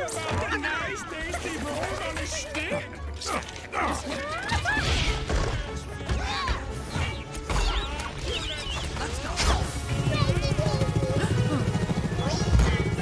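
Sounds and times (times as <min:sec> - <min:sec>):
background music: 0:00.0 - 0:13.0.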